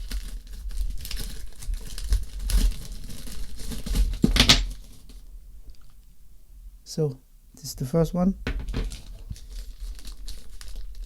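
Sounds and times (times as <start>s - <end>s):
plastic packaging crinkling: 0.0s - 5.9s, 8.4s - 11.0s.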